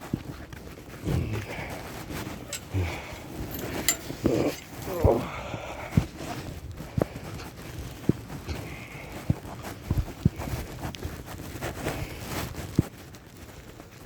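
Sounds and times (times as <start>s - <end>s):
clothing rustle: 0.0s - 14.0s
footsteps in snow: 0.0s - 14.0s.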